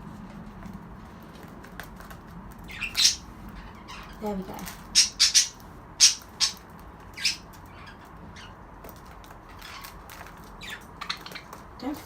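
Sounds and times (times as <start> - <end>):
budgerigars squawking: 2.7 - 4.3, 4.9 - 6.6, 7.2 - 8.6
budgerigar chirps: 4.9 - 6.6.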